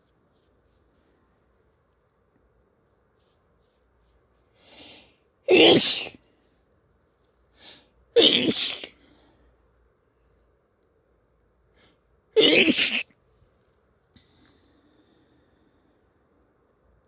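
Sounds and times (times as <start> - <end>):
quiet intake of breath: 4.4 - 5.3, 13.4 - 16.9
person sneezing: 5.5 - 6.2, 8.2 - 9.0, 12.4 - 13.1.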